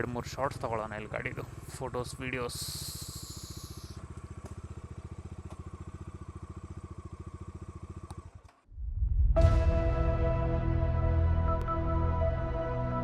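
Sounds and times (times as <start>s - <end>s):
motorcycle engine idling: 0.0s - 8.7s
music: 9.0s - 13.0s.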